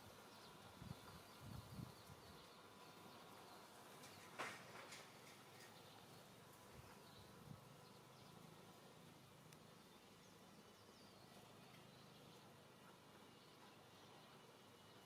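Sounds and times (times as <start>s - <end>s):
brief rustle: 4.0s - 5.8s.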